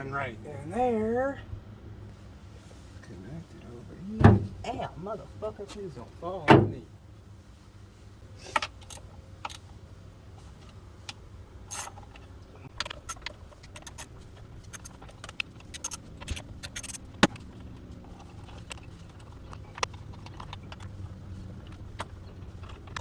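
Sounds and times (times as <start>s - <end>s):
metallic clicks of tools and parts: 11.7s - 17.5s.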